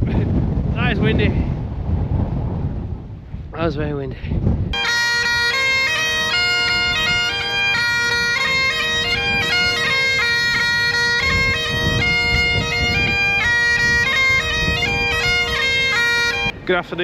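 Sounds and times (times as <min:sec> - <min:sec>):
bagpipes playing a melody: 0:04.8 - 0:16.6.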